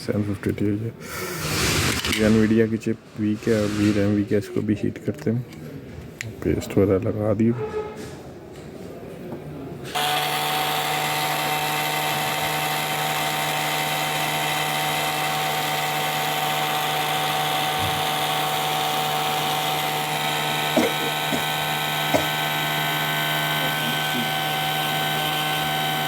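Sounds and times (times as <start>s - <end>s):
hot air gun blowing: 10.0s - 26.0s
small knocks: 20.7s - 22.5s.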